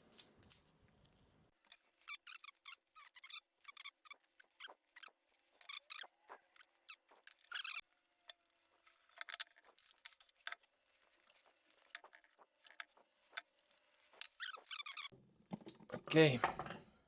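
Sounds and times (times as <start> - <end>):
clicks and rattles of small tools: 1.6 - 15.1.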